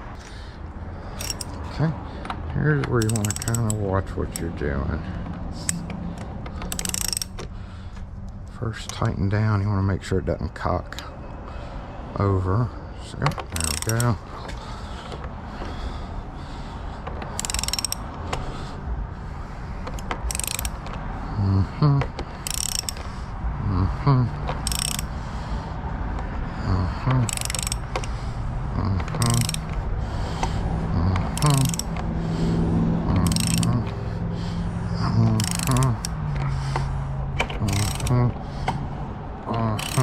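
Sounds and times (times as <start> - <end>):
ratchet wrench clicking: 1.1 - 1.6, 2.2 - 7.6, 13.2 - 14.2, 17.1 - 18.8, 19.8 - 21.1, 22.0 - 23.3, 24.4 - 25.2, 26.2 - 32.4, 33.1 - 34.1, 35.0 - 38.8, 39.6 - 40.0.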